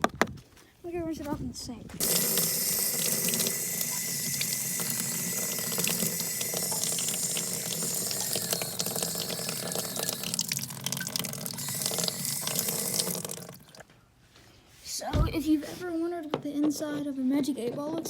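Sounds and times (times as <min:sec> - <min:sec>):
faucet running: 0:02.0 - 0:13.8.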